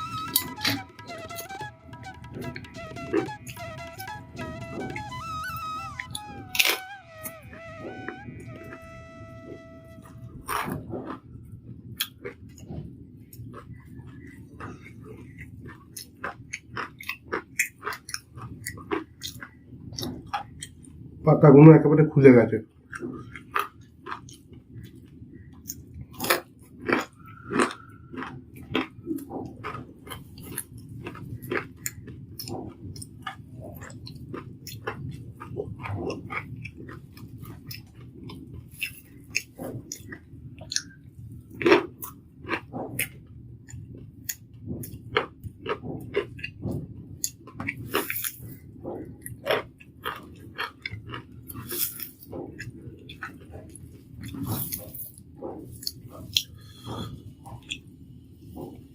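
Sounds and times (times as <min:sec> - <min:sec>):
low hum: 0:00.0 - 0:11.2
chewing crispy fritters: 0:09.8 - 0:21.5, 0:22.7 - 0:58.9.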